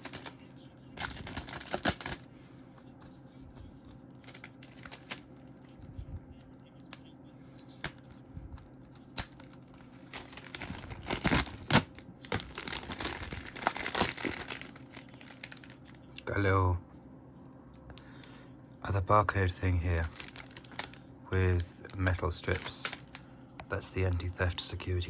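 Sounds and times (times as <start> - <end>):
plastic shrink-wrap crinkling: 0.0 - 0.4, 1.0 - 2.2, 10.0 - 16.0, 20.0 - 21.0, 21.9 - 23.2.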